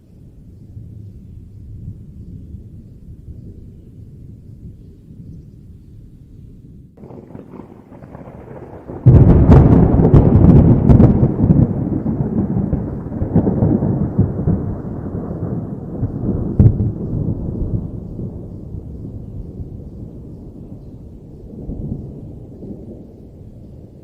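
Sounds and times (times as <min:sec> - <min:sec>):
thunder rolling rumble: 0:00.2 - 0:24.0
thunder crack: 0:07.0 - 0:23.1.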